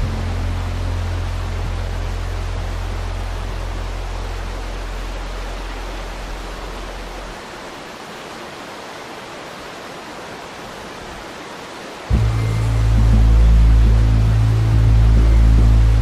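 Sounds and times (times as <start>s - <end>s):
loud music with deep bass: 0.0s - 3.2s, 12.1s - 16.0s
low droning tone: 0.0s - 5.4s, 12.1s - 16.0s
waterfall rushing: 0.0s - 16.0s.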